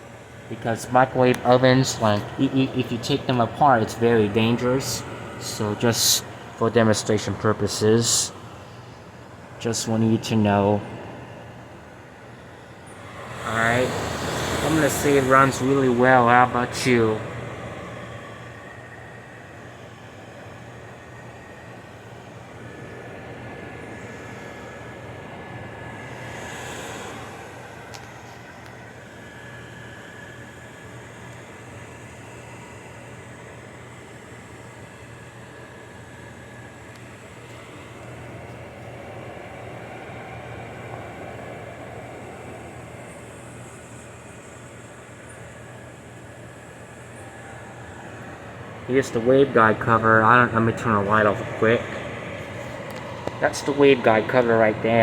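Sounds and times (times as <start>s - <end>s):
low hum: 0.0s - 26.2s
microwave fans whirring: 0.0s - 55.0s
low motor hum: 10.8s - 26.2s, 36.6s - 55.0s.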